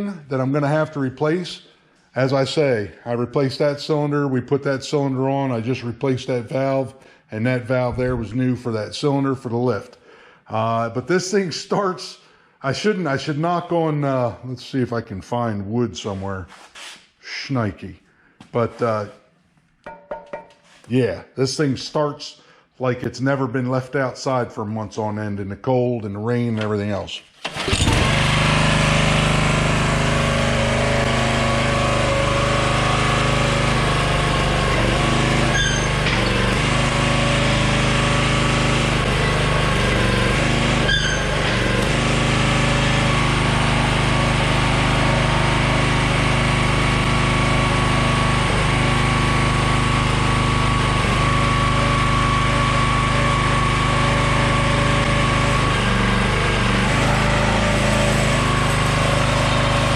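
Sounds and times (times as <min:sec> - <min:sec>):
small gasoline engine running: 0:27.5 - 0:59.9.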